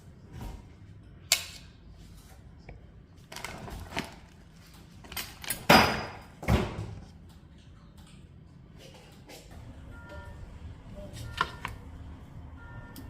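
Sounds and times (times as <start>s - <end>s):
kitchen clatters and knocks: 3.2s - 7.2s.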